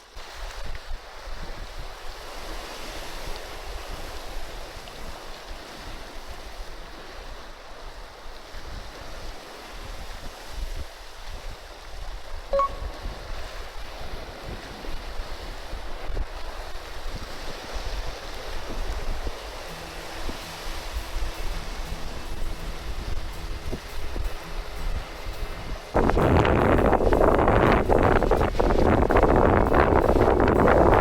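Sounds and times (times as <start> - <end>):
sea surf washing: 0.0 - 31.0
wind buffeting microphone: 0.2 - 31.0
short sharp ping: 12.5 - 13.1.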